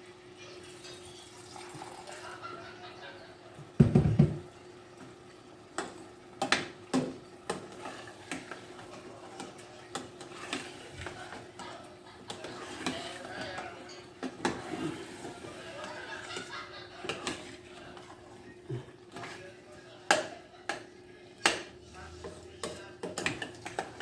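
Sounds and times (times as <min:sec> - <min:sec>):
spoon scraping cooking pot: 0:05.8 - 0:24.0.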